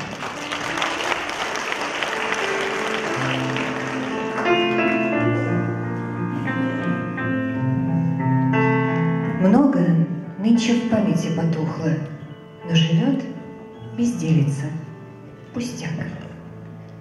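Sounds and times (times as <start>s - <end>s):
audience applauding: 0.0s - 5.5s
instrumental music: 0.0s - 17.0s.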